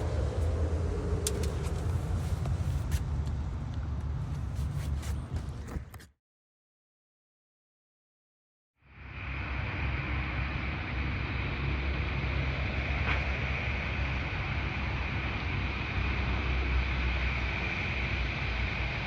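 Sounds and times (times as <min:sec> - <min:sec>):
wind buffeting microphone: 0:00.0 - 0:04.2.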